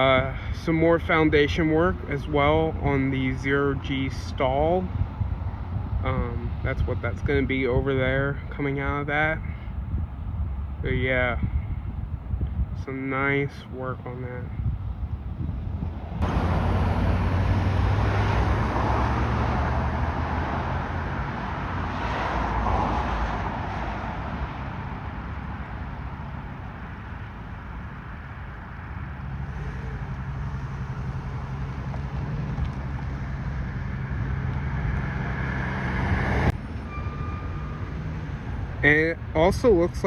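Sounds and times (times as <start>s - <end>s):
tyre and road noise: 14.6s - 40.0s
vehicle engine humming: 16.2s - 22.0s, 24.0s - 39.7s.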